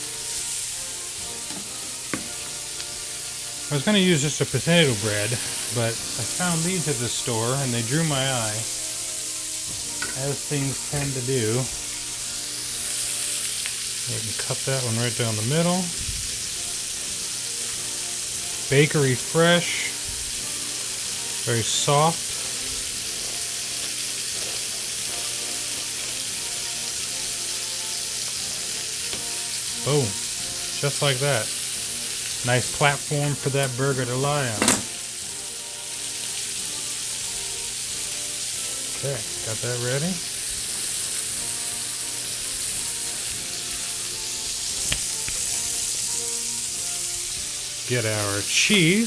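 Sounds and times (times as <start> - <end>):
burger patty sizzling: 0.0 - 49.0
sharp knock: 34.6 - 34.9.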